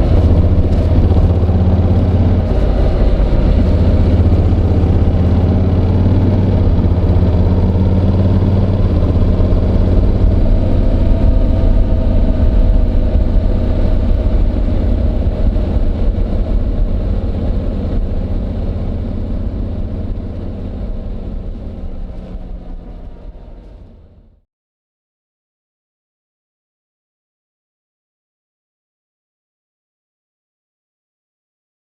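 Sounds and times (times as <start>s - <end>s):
muffled motorcycle engine running: 0.0s - 24.4s.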